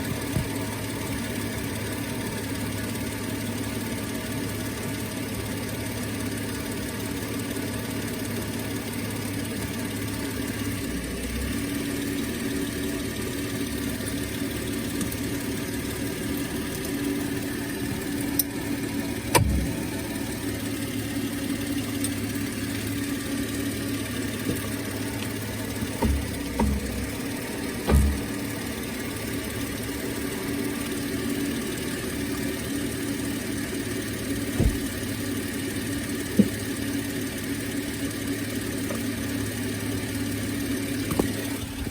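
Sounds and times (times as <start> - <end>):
vehicle engine idling: 0.0 - 41.9
sharp clunks: 19.3 - 19.8, 25.8 - 28.5, 34.6 - 35.0.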